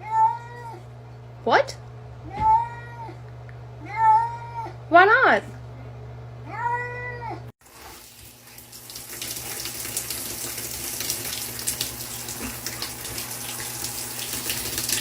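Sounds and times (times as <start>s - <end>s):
water running from a tap: 7.6s - 15.0s.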